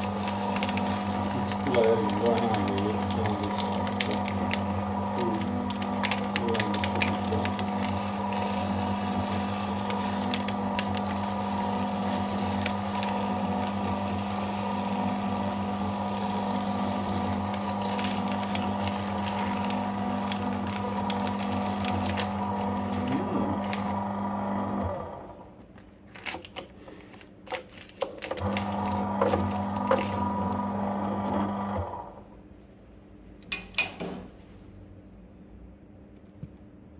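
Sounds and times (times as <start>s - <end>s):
paper crackling in shredder: 0.0s - 32.4s
paper shredder motor humming: 0.0s - 32.4s
paper rustling: 17.0s - 23.9s, 25.8s - 30.2s.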